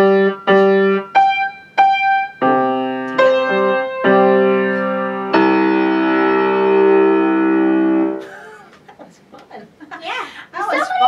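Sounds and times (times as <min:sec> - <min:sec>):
piano notes and chords: 0:00.0 - 0:08.2.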